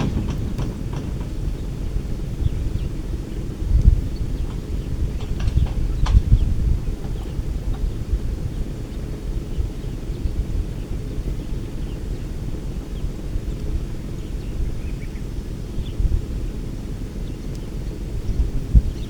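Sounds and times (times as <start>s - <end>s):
steady low rumble: 0.0s - 10.9s.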